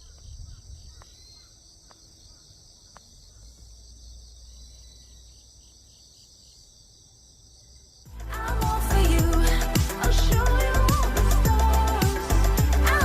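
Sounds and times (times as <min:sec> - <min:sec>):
crickets chirping: 0:00.0 - 0:08.2
loud music: 0:08.1 - 0:13.0.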